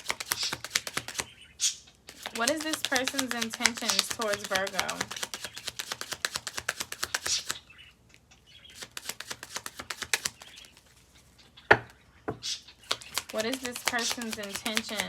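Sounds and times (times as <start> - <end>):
cards being shuffled: 0.0 - 1.3, 2.1 - 7.6, 8.7 - 10.9, 12.8 - 15.0.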